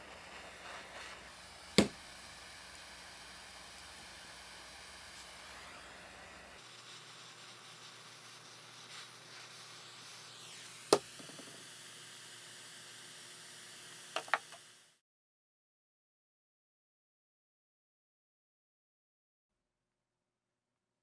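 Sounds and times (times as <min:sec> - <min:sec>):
steady hiss: 0:00.0 - 0:12.1.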